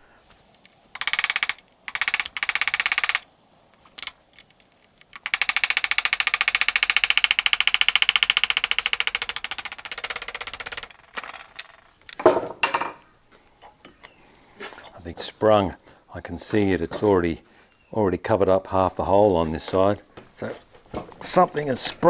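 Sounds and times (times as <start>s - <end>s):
power tool pulsing rapidly: 1.0s - 3.2s, 5.1s - 10.9s.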